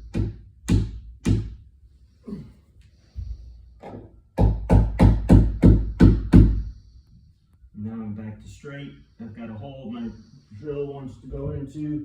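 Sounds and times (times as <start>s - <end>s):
hammer striking wood: 0.0s - 1.6s, 4.4s - 6.7s.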